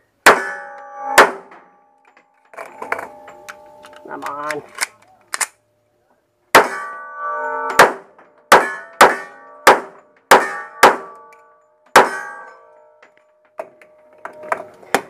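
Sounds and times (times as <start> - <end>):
gunshots with metallic ringing: 0.2 - 2.0, 6.5 - 13.1.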